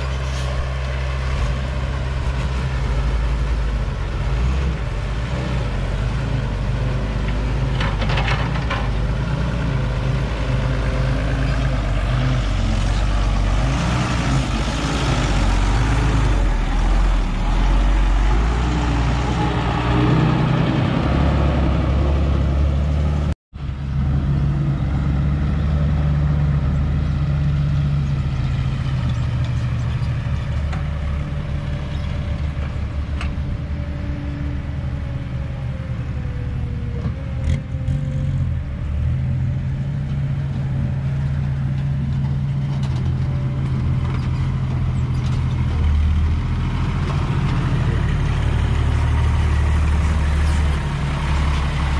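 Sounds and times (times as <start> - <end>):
soil being dug and loaded: 0.0 - 19.4
heavy diesel engines running: 0.0 - 51.9.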